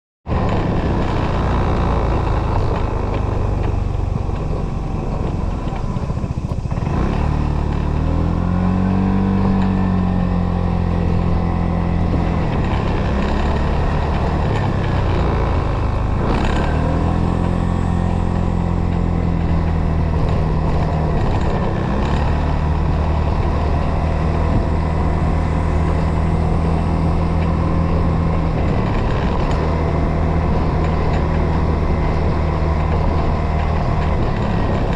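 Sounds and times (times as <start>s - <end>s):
motorcycle engine accelerating: 0.2s - 34.9s.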